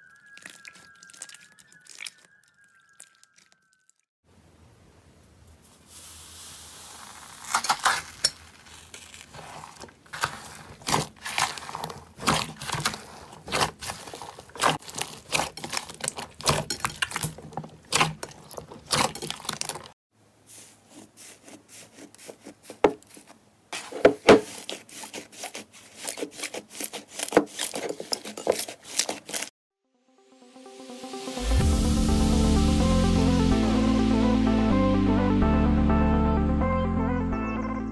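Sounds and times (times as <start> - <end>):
slime crackling and popping: 7.0 - 19.9.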